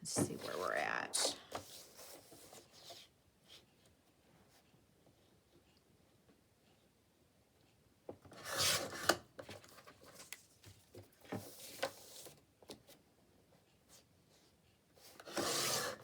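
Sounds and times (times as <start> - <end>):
paper scraping on table: 15.2 - 16.0.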